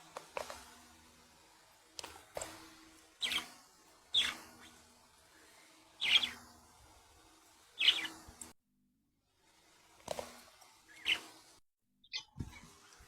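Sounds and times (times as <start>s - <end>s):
budgerigar chirps: 6.0s - 6.4s, 7.8s - 8.2s.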